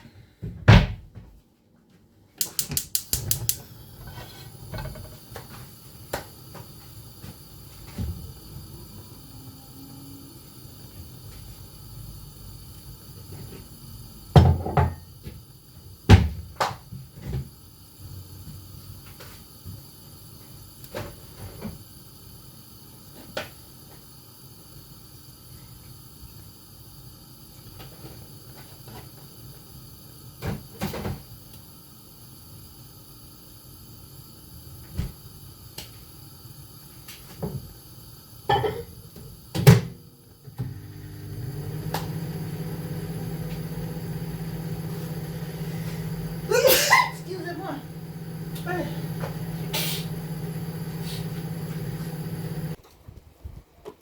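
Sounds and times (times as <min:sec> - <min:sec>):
kitchen knocks and clunks: 0:00.4 - 0:01.4, 0:04.1 - 0:05.5, 0:14.4 - 0:15.0.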